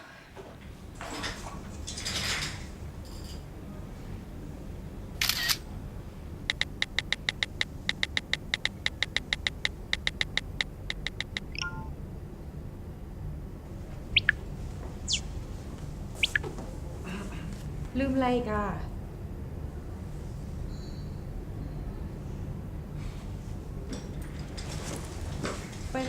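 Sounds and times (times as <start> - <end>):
rapid sharp ringing clicks: 6.5 - 11.9.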